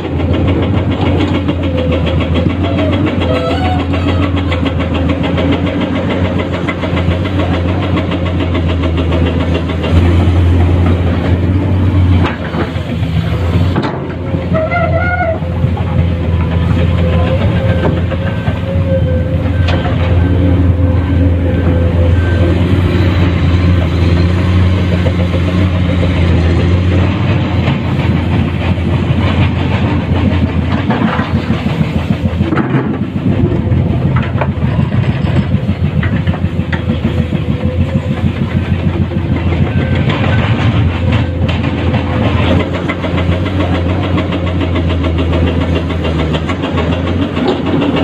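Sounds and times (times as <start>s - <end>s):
excavator diesel engine running: 0.0s - 48.0s
knocks and clatter: 0.0s - 48.0s.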